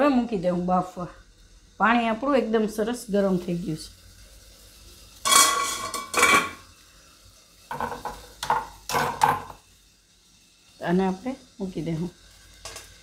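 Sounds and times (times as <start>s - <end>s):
metal plates clanking: 5.2s - 6.6s.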